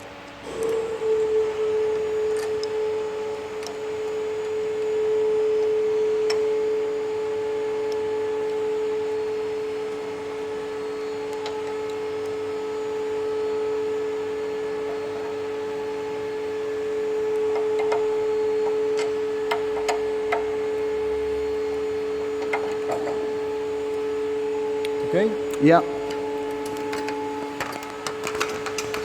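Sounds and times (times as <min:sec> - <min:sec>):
hydraulic pump whining: 0:00.0 - 0:29.0.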